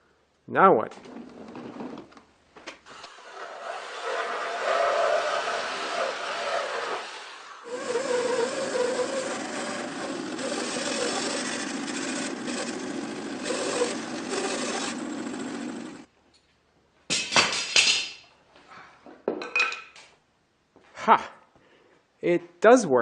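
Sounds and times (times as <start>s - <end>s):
bandsaw cutting through log: 3.0s - 16.1s.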